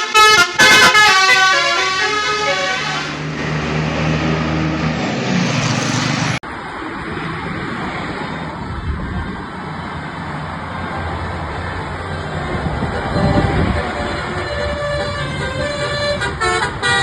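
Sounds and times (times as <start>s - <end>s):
melodic bus horn: 0.0s - 4.9s, 12.7s - 17.0s
bus engine humming: 0.0s - 17.0s
road and traffic noise: 0.0s - 17.0s.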